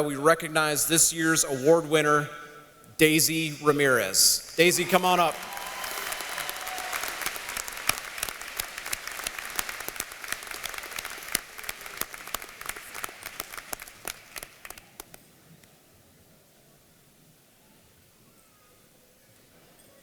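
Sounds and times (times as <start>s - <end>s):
audience applauding: 4.5s - 15.2s.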